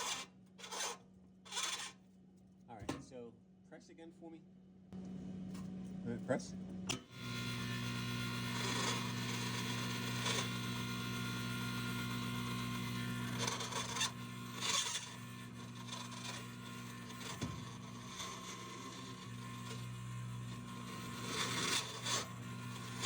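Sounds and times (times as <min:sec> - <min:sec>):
rubbing scraping sounds: 0:00.0 - 0:02.0
ice dispenser humming: 0:07.1 - 0:23.0.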